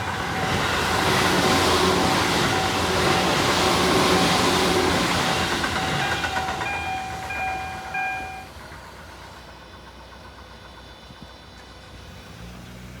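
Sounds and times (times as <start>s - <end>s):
level crossing warning bell: 0.0s - 8.6s
passing train rumble: 0.0s - 13.0s.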